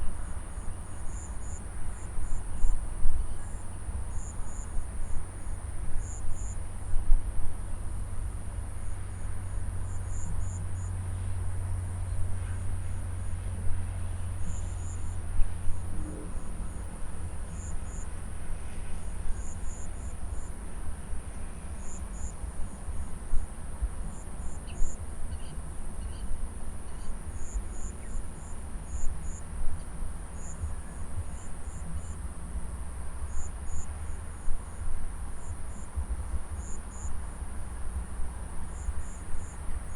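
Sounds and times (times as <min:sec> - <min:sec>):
insect chirps: 0:00.0 - 0:06.6, 0:09.5 - 0:10.9, 0:14.4 - 0:15.2, 0:17.3 - 0:18.1, 0:21.8 - 0:22.4, 0:24.1 - 0:26.3, 0:26.9 - 0:32.7, 0:33.3 - 0:34.8, 0:35.4 - 0:36.0, 0:36.6 - 0:37.2, 0:38.7 - 0:39.9.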